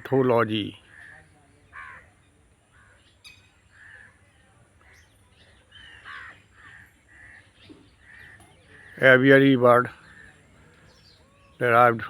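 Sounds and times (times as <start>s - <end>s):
faint birds calling: 0.0s - 12.0s.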